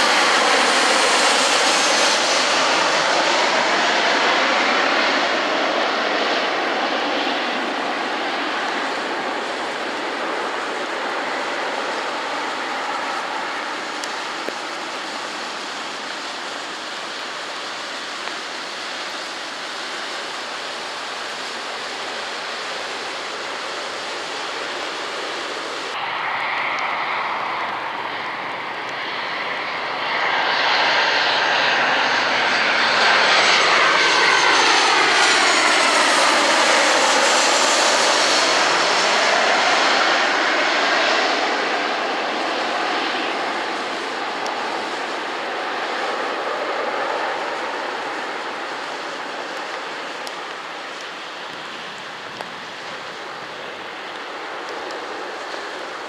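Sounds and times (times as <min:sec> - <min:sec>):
aircraft engines passing: 0:00.0 - 0:56.0
heavy rain hissing: 0:07.5 - 0:26.0.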